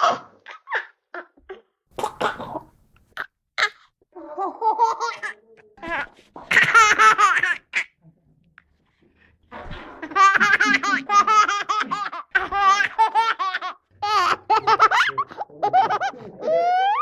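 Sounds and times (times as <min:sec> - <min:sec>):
baby laughing: 0:02.0 - 0:02.8, 0:04.4 - 0:07.8, 0:10.2 - 0:16.3.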